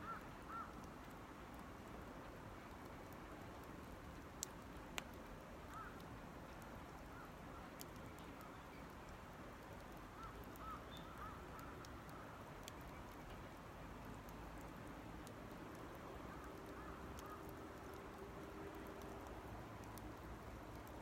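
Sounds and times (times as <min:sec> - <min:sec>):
faint bird calls: 0:00.0 - 0:00.9, 0:05.7 - 0:06.0, 0:10.0 - 0:13.1
campfire burning with hiss: 0:00.0 - 0:21.0
fire crackling pops: 0:00.0 - 0:21.0.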